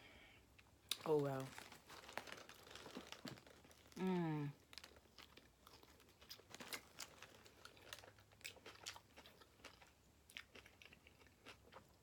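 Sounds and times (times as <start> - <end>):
person chewing sandwich: 2.0 - 12.0.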